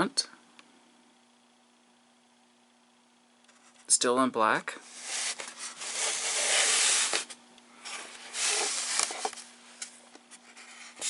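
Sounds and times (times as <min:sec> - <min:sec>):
packaging rustling: 0:04.9 - 0:11.0.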